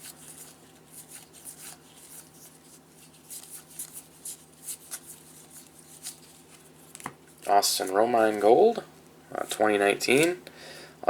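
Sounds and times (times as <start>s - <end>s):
cards being flipped by hand: 0.0s - 8.5s.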